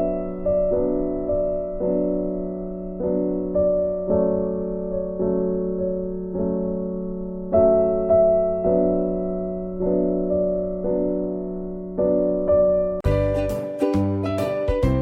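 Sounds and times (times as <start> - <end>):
gentle electric piano chords: 0.0 - 15.0
upbeat music with a beat: 13.0 - 15.0.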